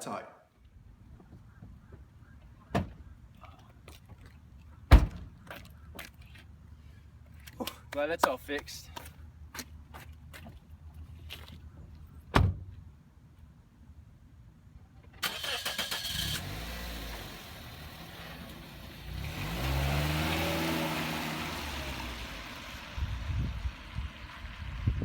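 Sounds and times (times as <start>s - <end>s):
car engine starting and revving: 15.2s - 25.0s.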